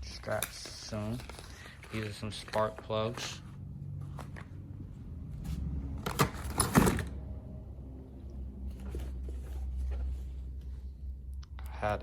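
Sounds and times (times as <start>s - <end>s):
packaging rustling and clicking: 0.1s - 3.4s.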